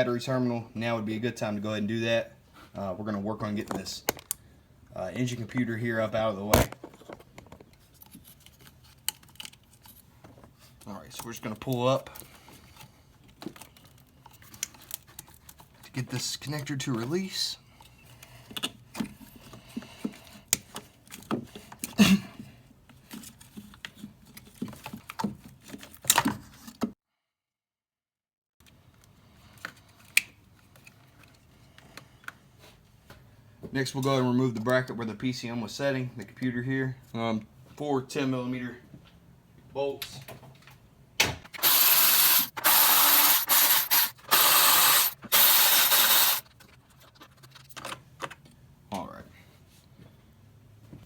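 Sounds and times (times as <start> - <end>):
power ratchet spinning: 41.5 - 46.5.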